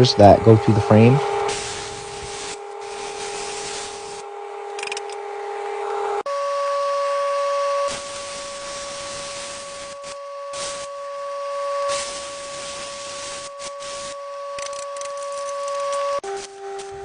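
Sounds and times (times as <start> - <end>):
plasma cutter cutting steel: 1.5 - 4.2, 7.8 - 16.5.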